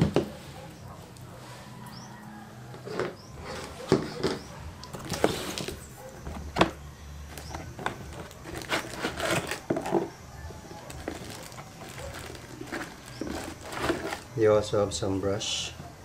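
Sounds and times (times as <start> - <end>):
plastic packaging rustling: 2.9 - 14.4.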